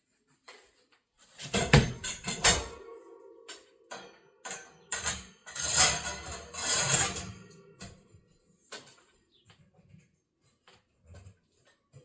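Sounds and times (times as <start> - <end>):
metal rack parts clattering: 1.5 - 2.9, 3.5 - 8.1.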